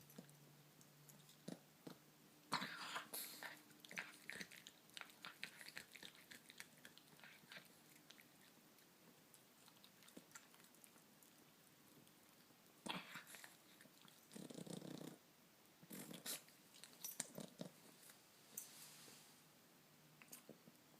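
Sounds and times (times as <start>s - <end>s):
pet chewing: 2.8s - 15.2s.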